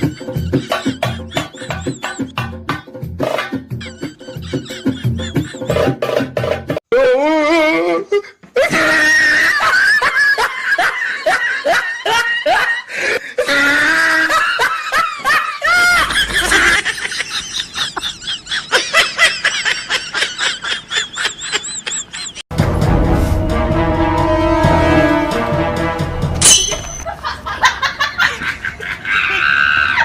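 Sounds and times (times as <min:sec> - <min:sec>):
person laughing hard: 0:00.0 - 0:02.3, 0:03.8 - 0:06.0, 0:08.0 - 0:22.4, 0:27.0 - 0:30.0.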